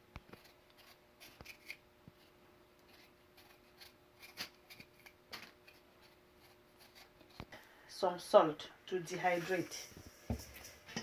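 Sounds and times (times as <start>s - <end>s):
blade scraping potatoes: 0.3s - 2.3s, 2.9s - 7.4s.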